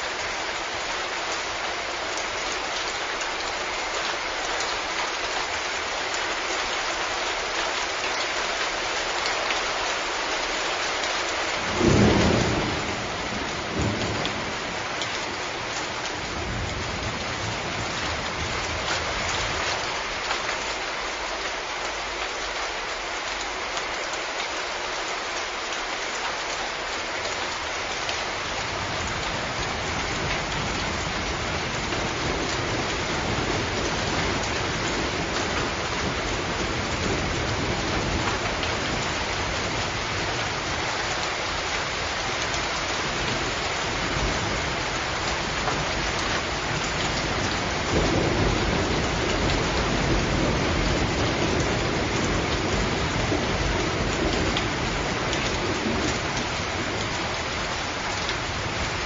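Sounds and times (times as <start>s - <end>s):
steady rainfall: 0.0s - 59.0s
low rolling thunder rumbles: 11.6s - 19.7s, 28.6s - 40.9s, 43.0s - 57.8s
thunder clap: 11.7s - 14.9s.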